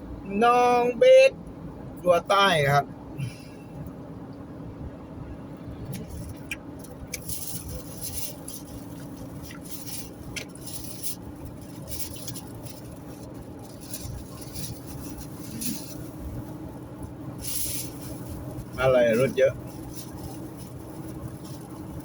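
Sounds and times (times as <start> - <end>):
car engine and road drone: 0.0 - 22.0.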